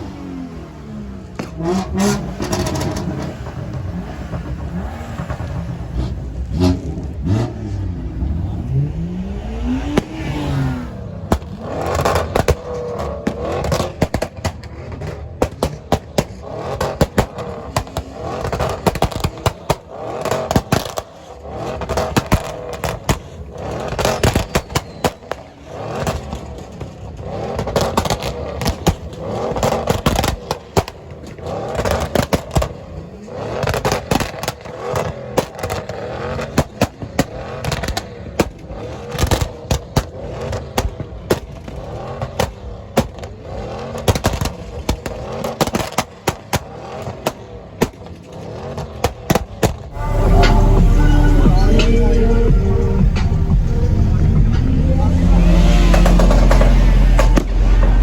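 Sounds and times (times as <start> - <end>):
car engine revving: 0.0 - 15.2, 49.9 - 58.0.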